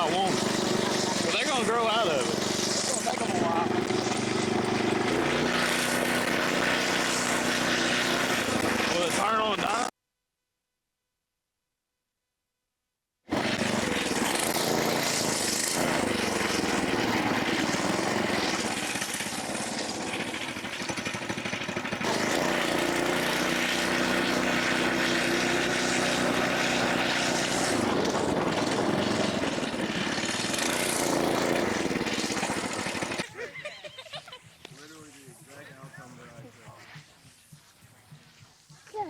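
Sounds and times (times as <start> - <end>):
small vehicle engine running: 0.0 - 9.9, 13.3 - 33.3.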